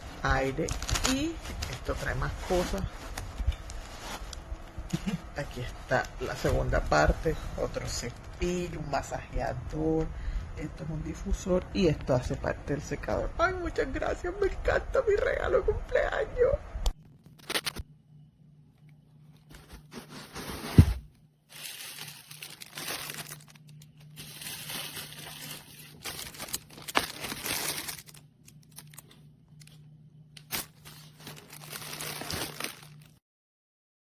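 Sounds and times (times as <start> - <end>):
faint low hum: 0.0 - 33.2
packaging crinkling: 17.3 - 17.8, 19.3 - 33.2.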